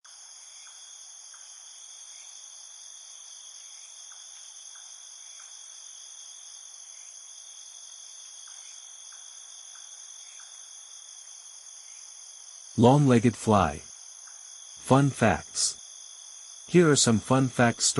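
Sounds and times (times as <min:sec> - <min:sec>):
high-pitched insect chorus: 0:00.1 - 0:12.8.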